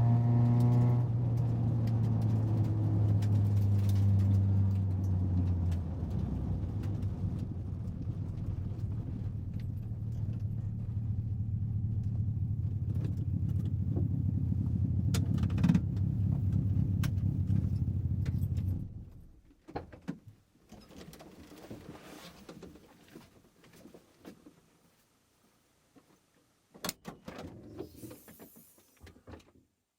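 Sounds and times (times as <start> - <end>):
car engine humming: 0.0 - 19.3.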